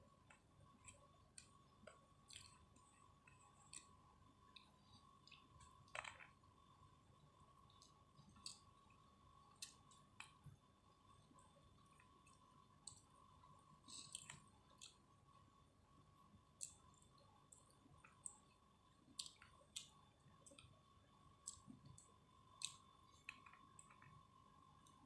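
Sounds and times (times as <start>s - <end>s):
faint high hum: 0.0s - 25.0s
chewing mouth clicks and smacks: 0.3s - 6.3s, 7.7s - 8.8s, 13.9s - 15.0s, 16.6s - 20.8s, 21.4s - 24.2s.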